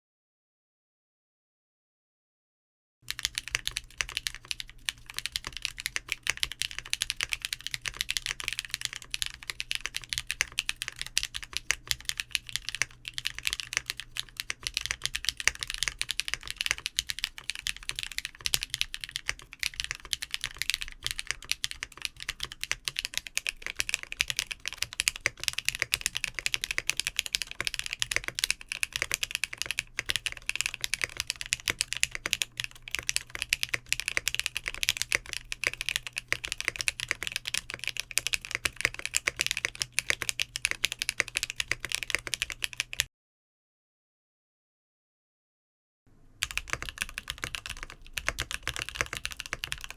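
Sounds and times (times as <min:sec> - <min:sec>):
mechanical keyboard typing: 0:03.1 - 0:43.1, 0:46.4 - 0:49.9.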